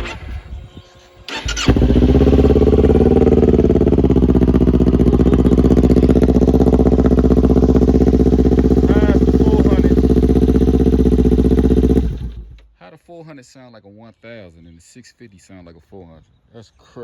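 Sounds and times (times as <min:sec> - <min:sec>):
motorcycle engine cranking: 0:01.3 - 0:12.7
motorcycle engine running: 0:01.4 - 0:12.6.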